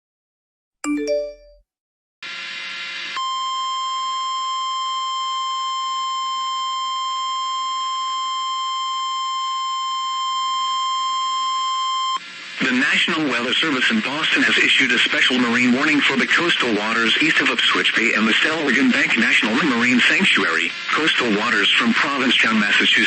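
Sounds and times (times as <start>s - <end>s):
radio static: 12.3s - 23.0s.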